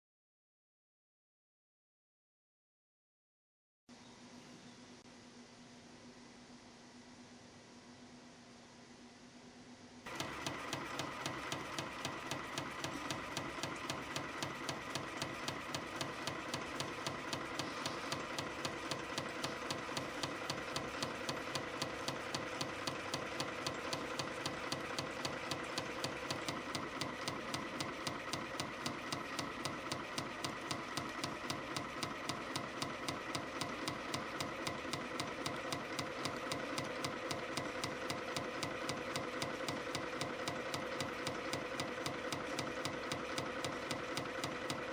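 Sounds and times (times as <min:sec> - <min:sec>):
machine whine: 0:10.1 - 0:44.9.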